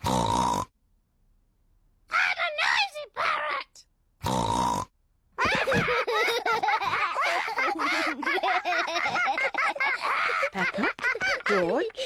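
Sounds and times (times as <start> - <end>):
cartoon children laughing: 5.4 - 12.0.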